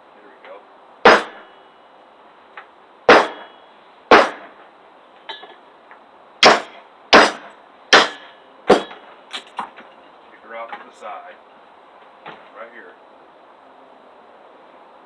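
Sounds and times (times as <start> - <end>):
hammer striking hatchet blade: 1.1 - 1.4, 3.1 - 3.5, 4.1 - 4.5, 6.4 - 9.7.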